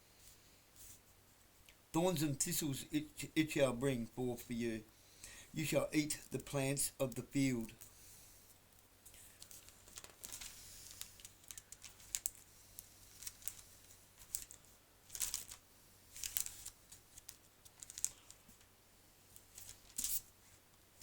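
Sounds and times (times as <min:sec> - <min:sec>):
low steady hum: 0:00.0 - 0:21.0
small handling clicks and rustles: 0:07.6 - 0:18.7, 0:19.3 - 0:20.9.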